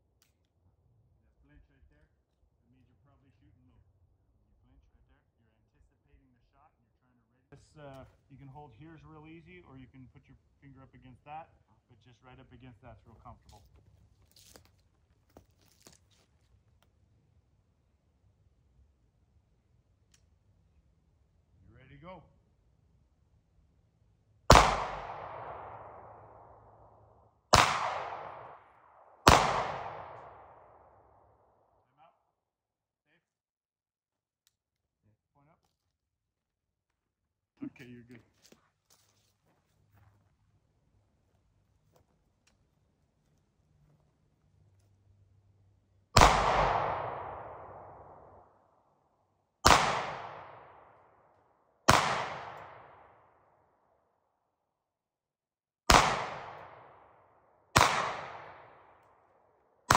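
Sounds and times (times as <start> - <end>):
pistol shots with echo: 24.5 - 31.4, 46.2 - 48.6, 49.6 - 51.2, 51.9 - 53.4, 55.9 - 59.3.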